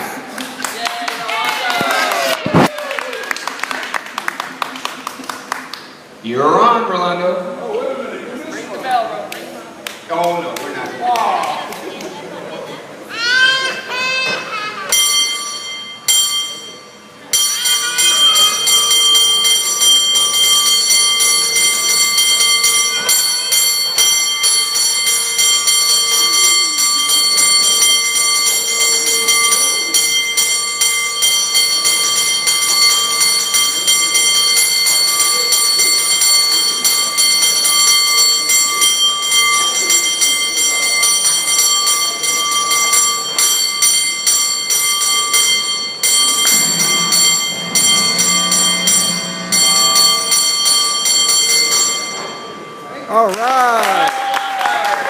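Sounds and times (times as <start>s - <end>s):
cable car bell ringing: 14.9s - 54.2s.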